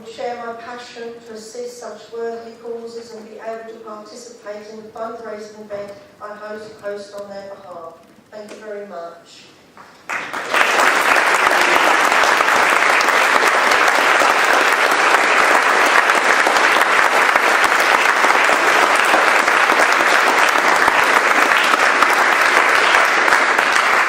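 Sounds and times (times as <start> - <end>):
audience applauding: 9.8 - 24.0.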